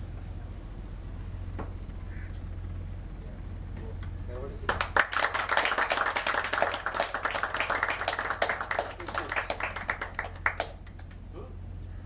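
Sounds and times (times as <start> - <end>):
audience applauding: 4.7 - 11.2.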